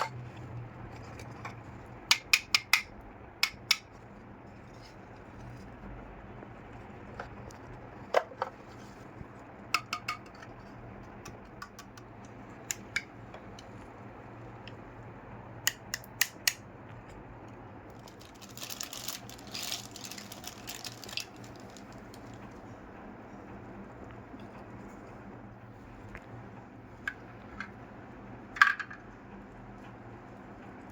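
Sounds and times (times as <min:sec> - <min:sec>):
steady low hum: 0:00.0 - 0:30.9
rustling: 0:17.9 - 0:22.4.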